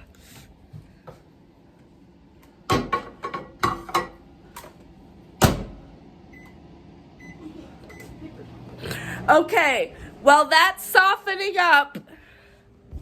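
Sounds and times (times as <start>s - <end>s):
microwave door banging shut: 5.4s - 5.8s.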